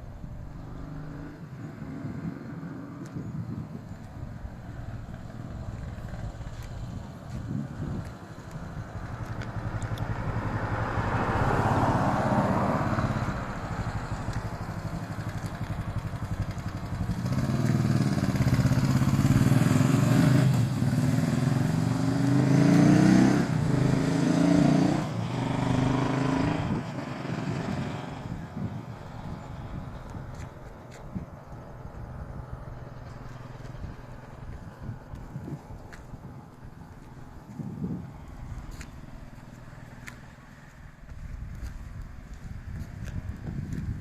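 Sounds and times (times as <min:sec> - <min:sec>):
vehicle passing: 0:00.0 - 0:44.0
engine revving: 0:00.6 - 0:03.0, 0:09.0 - 0:30.2.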